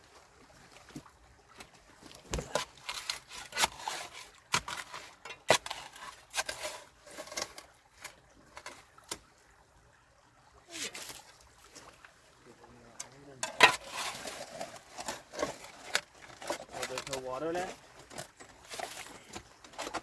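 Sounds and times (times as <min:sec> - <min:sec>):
knocks and scrapes: 0:00.8 - 0:09.2, 0:13.0 - 0:20.0.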